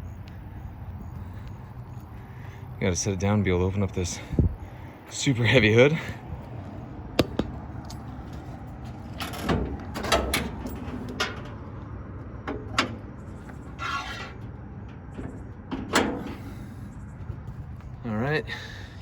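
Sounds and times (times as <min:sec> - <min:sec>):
metal hood clunks and clicks: 0:09.0 - 0:17.4
short metal scrape: 0:13.6 - 0:14.6.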